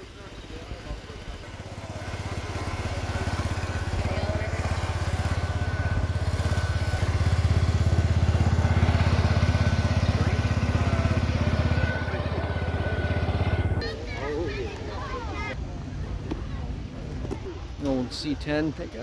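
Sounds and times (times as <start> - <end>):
garden tractor engine putter: 1.2 - 13.9.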